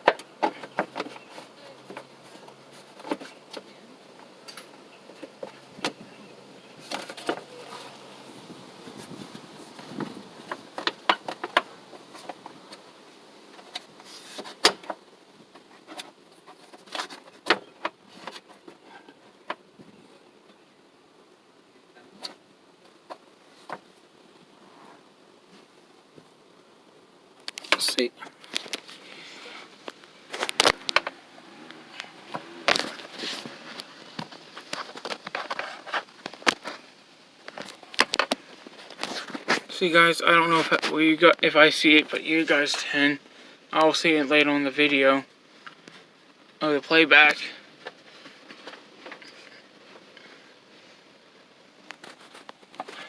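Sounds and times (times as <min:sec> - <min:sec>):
low background hiss: 0:00.0 - 0:53.0.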